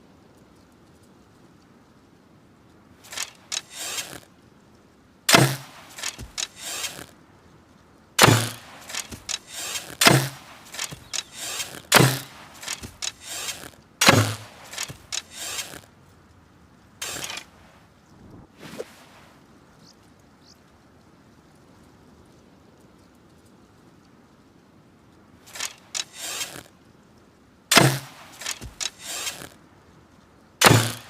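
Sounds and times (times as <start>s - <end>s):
bow release thump and rattle: 3.1s - 4.2s, 5.3s - 7.1s, 8.2s - 15.8s, 17.0s - 17.5s, 25.5s - 26.7s, 27.7s - 29.5s, 30.6s - 31.0s.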